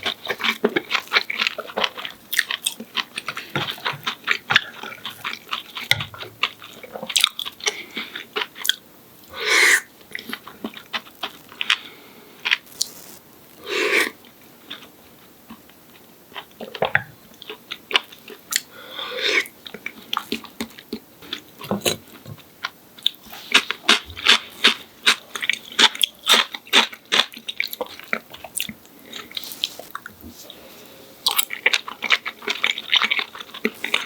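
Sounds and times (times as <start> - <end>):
chewing fried cutlet: 0.0 - 8.8, 10.0 - 13.1, 14.1 - 18.7, 19.4 - 30.2, 31.2 - 34.0
crisp crunching: 12.5 - 13.2.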